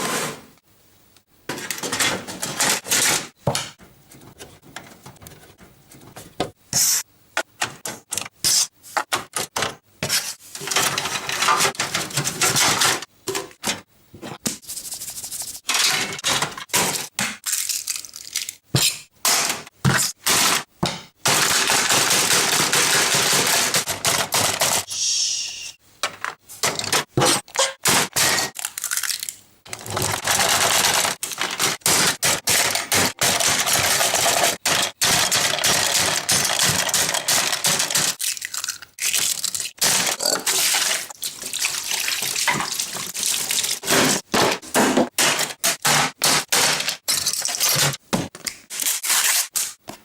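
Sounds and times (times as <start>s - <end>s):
hard objects smashing: 42.6s - 47.9s.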